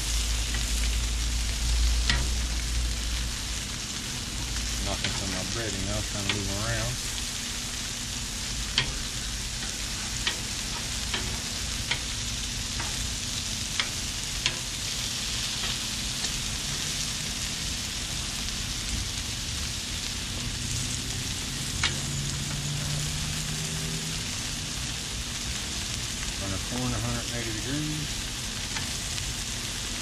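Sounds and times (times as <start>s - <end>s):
pork chops sizzling on griddle: 0.0s - 30.0s
metal spatula clicking on griddle: 2.0s - 2.4s, 8.7s - 12.1s, 13.7s - 14.7s, 21.8s - 22.6s.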